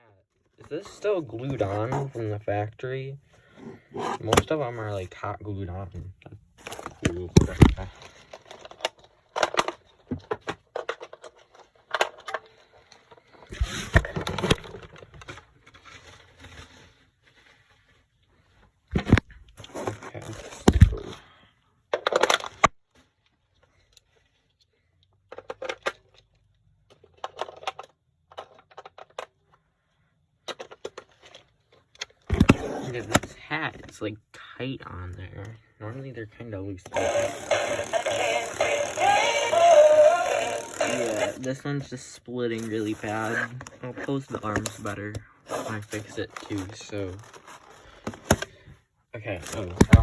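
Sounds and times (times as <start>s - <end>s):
hands handling plastic figure: 0.4s - 2.4s, 6.4s - 21.2s, 21.9s - 29.8s, 30.4s - 33.9s, 42.5s - 50.0s.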